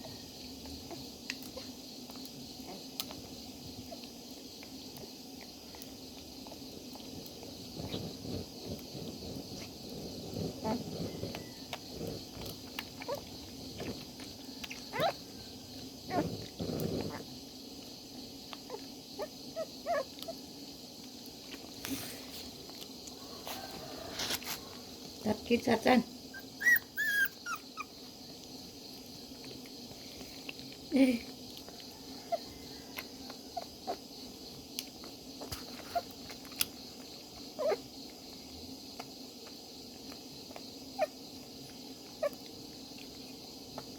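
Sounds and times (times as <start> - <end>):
puppies whimpering and squeaking: 14.8 - 15.2, 18.7 - 20.1, 26.3 - 28.0, 37.6 - 37.8.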